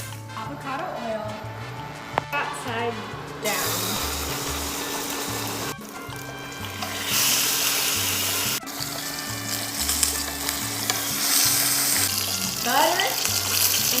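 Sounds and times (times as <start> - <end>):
background music with bass line: 0.0 - 14.0
steak sizzling in a pan: 3.4 - 14.0.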